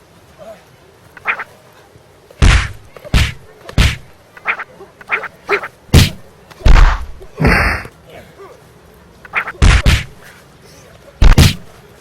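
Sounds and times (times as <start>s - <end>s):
punch and kick whacks: 2.4s - 4.1s, 5.9s - 7.2s, 9.6s - 10.2s, 11.2s - 11.7s.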